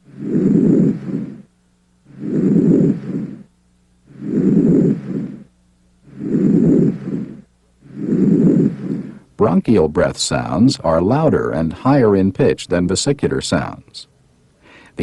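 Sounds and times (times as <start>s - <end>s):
breath sounds through stethoscope: 0.0s - 9.4s.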